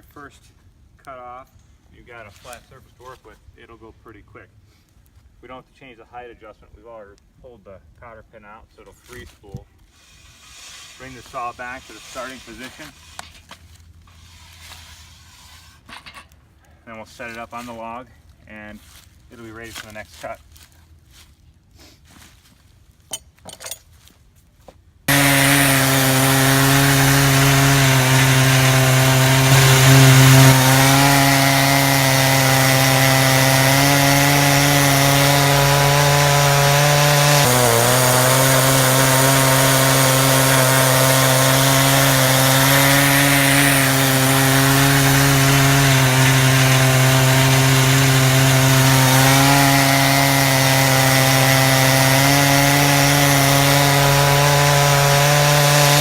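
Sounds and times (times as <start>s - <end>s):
chainsaw cutting log: 9.9s - 15.9s, 25.1s - 56.0s.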